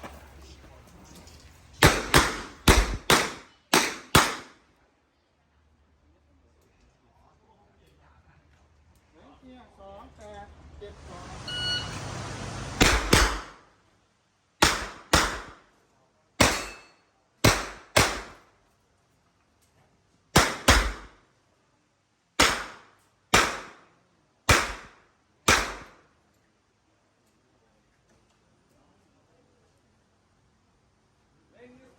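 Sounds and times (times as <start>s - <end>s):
handgun shots: 1.8s - 4.6s, 12.8s - 13.6s, 14.6s - 15.6s, 16.4s - 18.4s, 20.4s - 21.2s, 22.4s - 23.9s, 24.5s - 26.0s
electronic timer beep: 11.5s - 12.0s.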